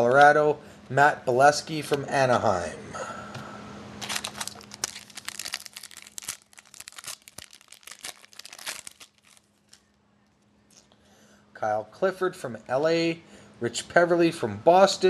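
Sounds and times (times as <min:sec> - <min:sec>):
foil wrapper tearing and crinkling: 0:04.0 - 0:09.9.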